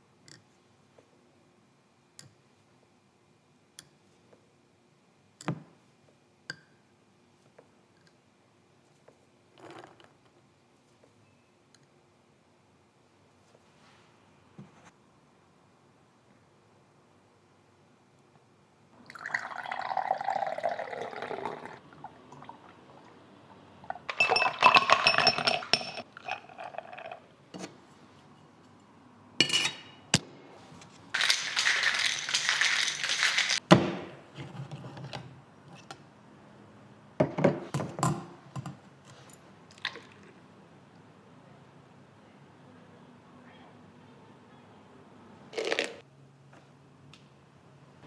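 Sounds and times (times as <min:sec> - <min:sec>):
liquid pouring into a cup: 0:19.0 - 0:23.2, 0:24.0 - 0:27.3
glassware clinking: 0:23.9 - 0:27.0, 0:29.4 - 0:30.0
cups and utensils clattering: 0:23.9 - 0:27.2.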